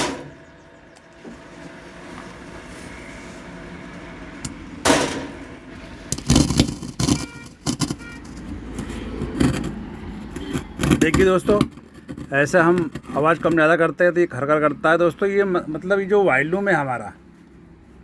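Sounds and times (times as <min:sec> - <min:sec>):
speaker crackling bursts: 0:00.0 - 0:08.9
amplifier and speaker humming: 0:00.0 - 0:12.2.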